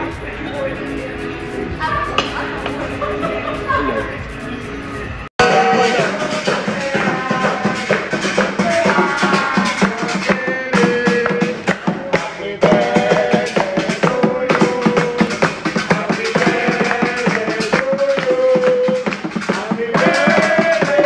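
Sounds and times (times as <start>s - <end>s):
background music with drums: 5.4s - 21.0s.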